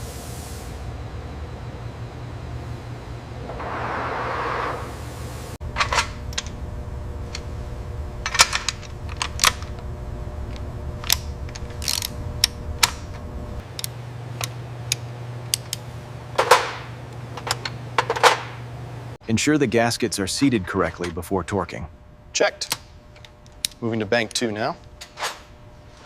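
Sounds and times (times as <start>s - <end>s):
steady low hum: 0.0s - 26.0s
low rumble: 1.7s - 9.2s.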